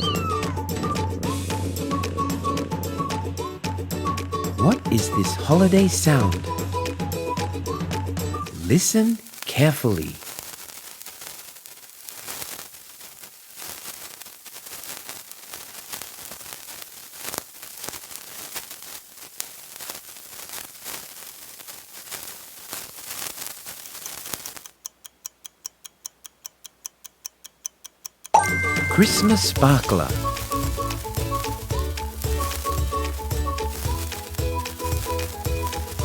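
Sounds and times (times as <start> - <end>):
sparkler fizzing and crackling: 4.6 - 7.0, 8.5 - 24.8, 28.4 - 36.0
fast ticking: 29.0 - 36.0.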